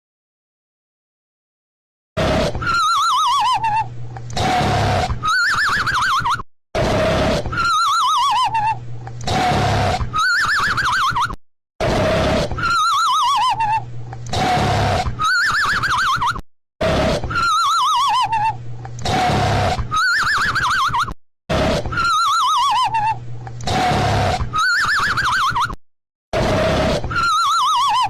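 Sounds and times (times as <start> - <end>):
cartoon snoring: 2.2 - 3.0, 4.4 - 5.5, 6.8 - 7.9, 9.2 - 10.4, 11.8 - 12.9, 14.3 - 15.5, 16.8 - 17.8, 19.0 - 20.2, 21.5 - 22.8, 23.6 - 25.4, 26.4 - 28.0.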